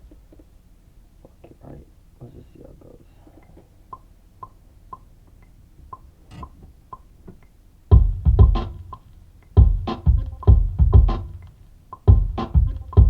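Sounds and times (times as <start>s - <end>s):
electronic drum beat with heavy kicks: 7.9s - 13.0s.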